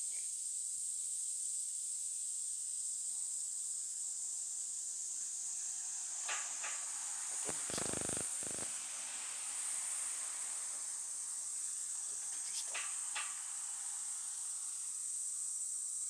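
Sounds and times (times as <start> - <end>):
insects trilling: 0.0 - 16.0
faint ticks: 6.2 - 8.8
rasping crackling noise: 7.4 - 8.7.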